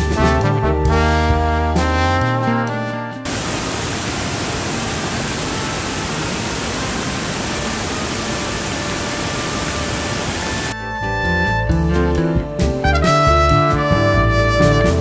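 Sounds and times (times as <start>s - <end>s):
waterfall rushing: 3.3s - 10.8s.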